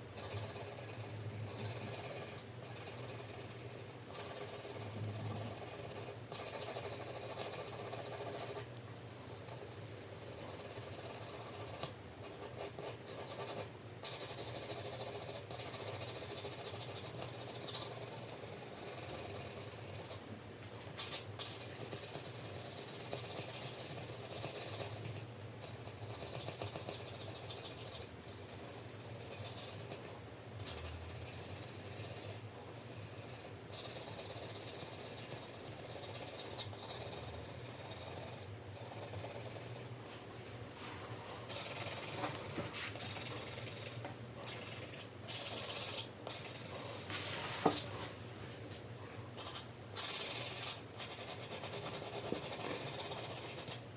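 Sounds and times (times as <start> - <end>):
pencil shading on paper: 25.7 - 30.1.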